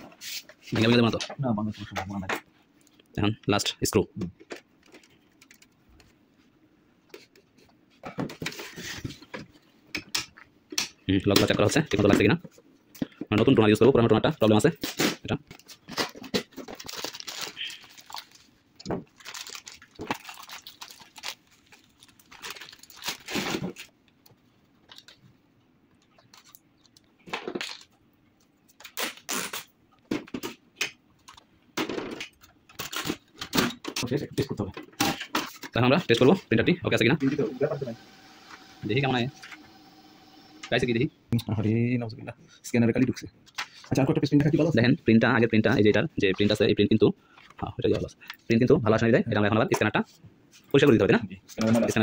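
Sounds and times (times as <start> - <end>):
plastic parts being handled: 15.2 - 29.0.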